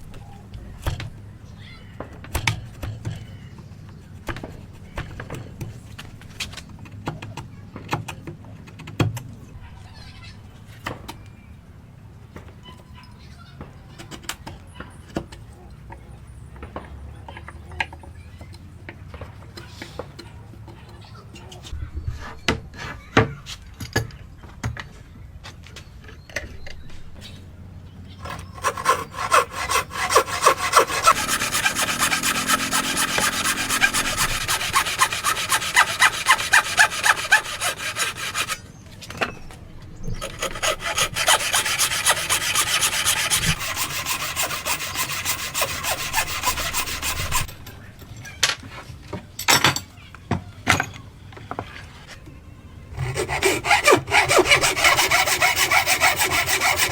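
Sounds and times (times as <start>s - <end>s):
hand sawing wood: 28.2s - 38.6s, 40.1s - 47.5s, 53.0s - 56.9s.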